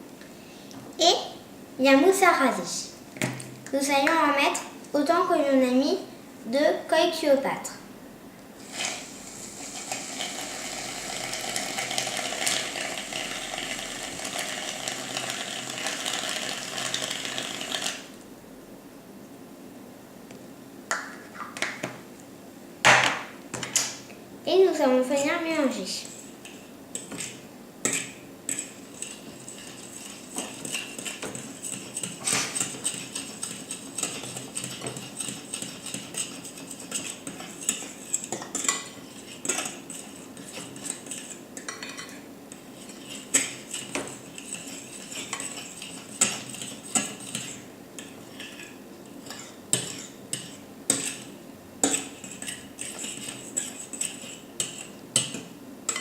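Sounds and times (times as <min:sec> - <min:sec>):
utensil stirring in a bowl: 0:08.6 - 0:18.1, 0:25.2 - 0:56.0.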